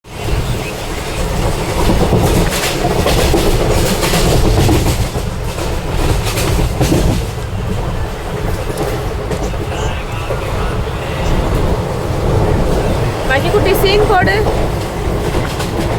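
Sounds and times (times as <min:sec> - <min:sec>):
vehicle rumbling: 0:00.1 - 0:15.9
sharp clacks: 0:01.1 - 0:09.7.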